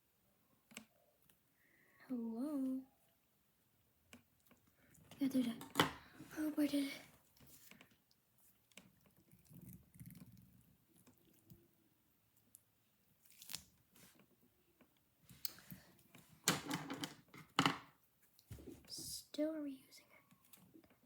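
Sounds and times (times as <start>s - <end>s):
squishy crinkling and tearing: 13.2s - 14.1s.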